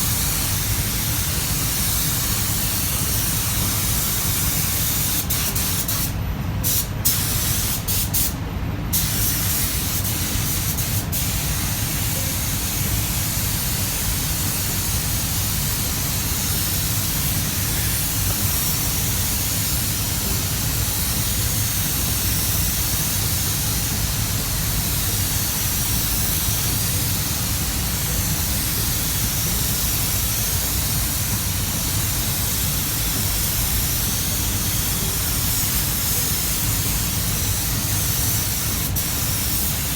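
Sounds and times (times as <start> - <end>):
spray gun hissing: 0.0 - 8.4, 9.0 - 39.9.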